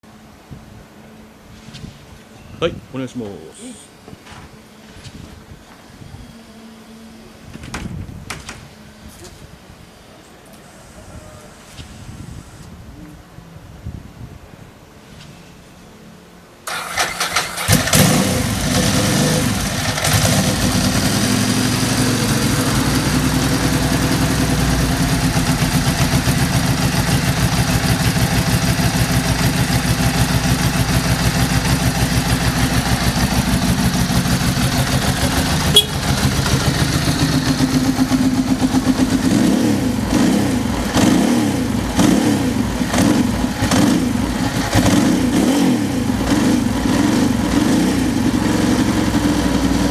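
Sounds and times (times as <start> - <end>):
electric starter cranking: 16.7 - 20.8
motorcycle engine idling: 16.7 - 45.3.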